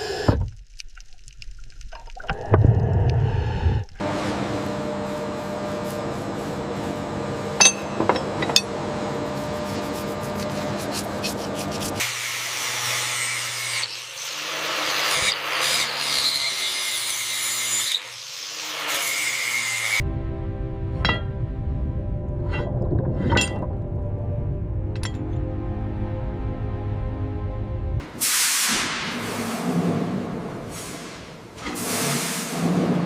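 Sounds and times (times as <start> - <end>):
steady machine hum: 4.0 - 12.0.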